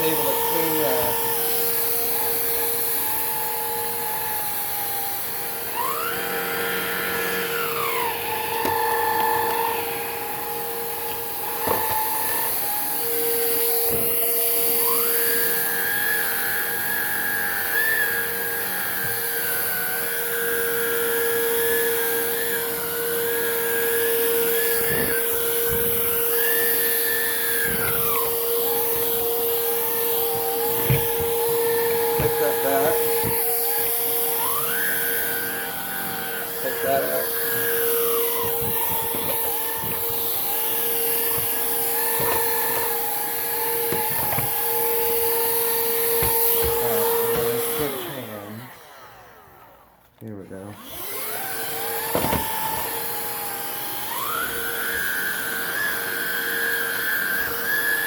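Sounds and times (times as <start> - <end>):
cordless vacuum motor whine: 0.0 - 58.0
vacuum head knocking: 10.8 - 12.6, 24.5 - 34.4, 36.6 - 47.8, 52.1 - 53.0.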